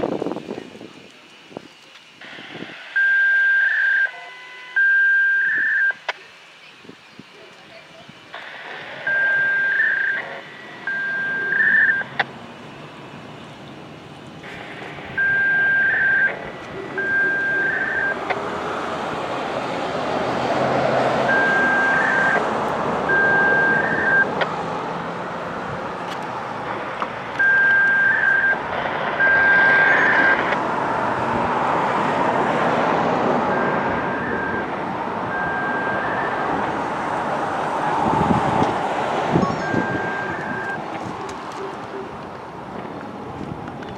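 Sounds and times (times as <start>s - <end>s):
vehicle noise: 0.0s - 43.9s
electronic beeper: 2.3s - 6.2s, 8.4s - 12.3s, 14.4s - 18.2s, 21.2s - 22.4s, 23.1s - 24.3s, 27.4s - 30.6s, 33.5s - 36.6s, 39.4s - 40.8s.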